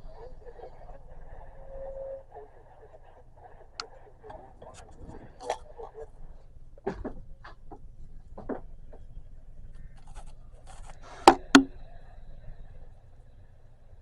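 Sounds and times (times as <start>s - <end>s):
steady low hum: 0.0s - 14.0s
faint scraping or rustling: 1.7s - 6.4s.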